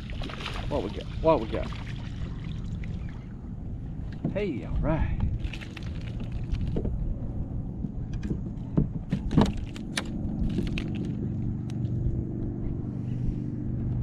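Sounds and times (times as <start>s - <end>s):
steady low rumble: 0.0s - 14.0s
fishing tackle clicks and knocks: 7.8s - 11.9s.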